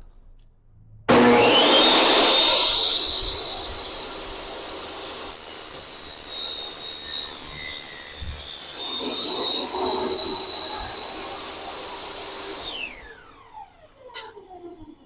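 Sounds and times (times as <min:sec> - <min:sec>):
table saw motor whining: 0:01.1 - 0:14.1
blade screeching through sheet steel: 0:01.9 - 0:13.1.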